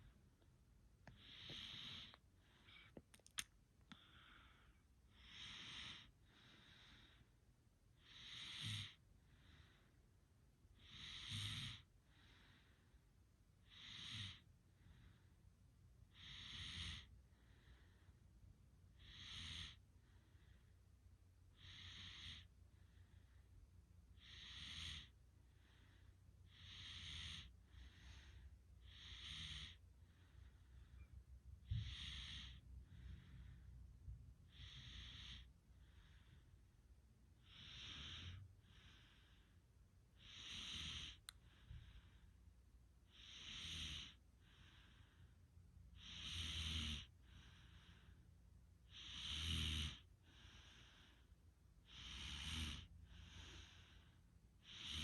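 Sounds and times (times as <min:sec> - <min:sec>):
person snoring: 0:46.0 - 0:47.1, 0:48.9 - 0:50.1, 0:51.9 - 0:53.8, 0:54.6 - 0:55.0.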